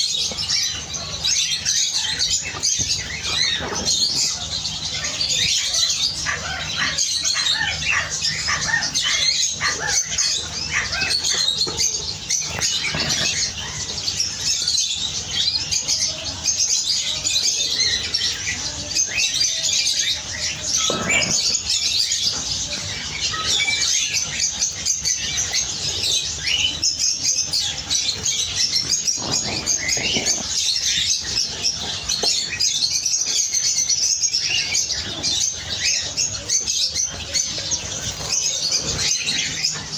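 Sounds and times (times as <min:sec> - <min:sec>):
canaries chirping: 0:00.0 - 0:39.9
wings fluttering: 0:27.7 - 0:32.6.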